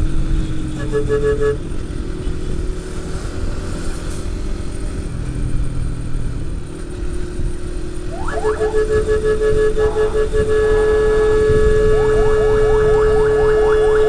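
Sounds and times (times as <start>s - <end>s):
wind and road noise: 0.0s - 14.0s
short pulsing beep: 8.1s - 12.8s.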